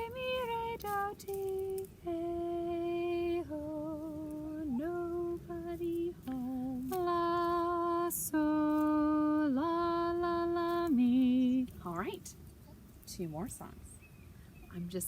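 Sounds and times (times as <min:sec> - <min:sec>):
woman singing: 0:00.0 - 0:12.2.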